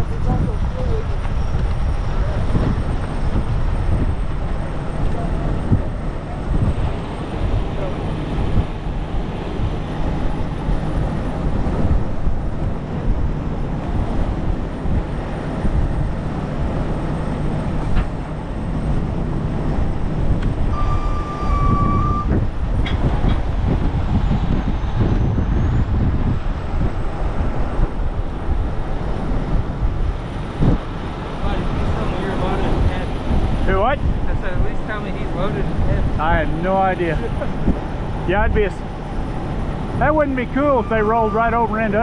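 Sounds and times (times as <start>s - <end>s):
wind buffeting microphone: 0.0s - 42.0s
high beep tone: 20.7s - 22.4s, 40.7s - 41.8s.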